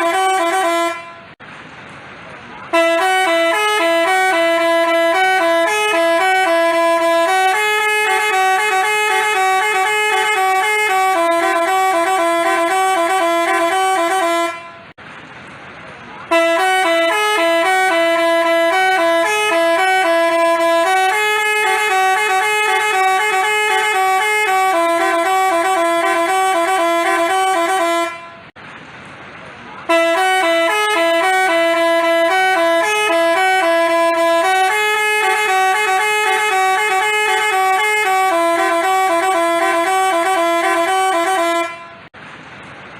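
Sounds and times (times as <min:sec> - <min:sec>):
multi-tone bus horn tune: 0:00.0 - 0:01.4, 0:02.6 - 0:15.0, 0:16.2 - 0:28.6, 0:29.8 - 0:42.2.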